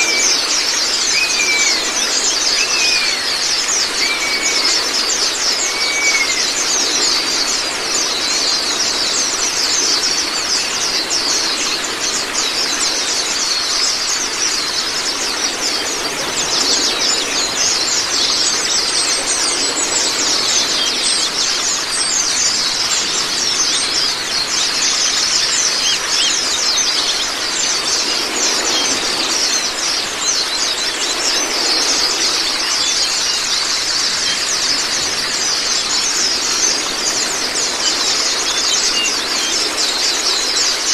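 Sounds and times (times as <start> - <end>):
birds chattering high chirps: 0.0 - 18.4
running water: 0.0 - 40.9.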